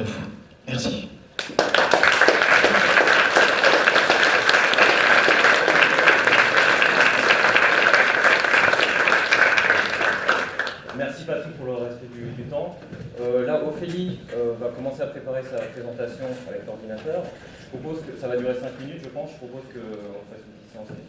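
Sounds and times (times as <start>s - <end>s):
audience applauding: 1.4s - 11.0s.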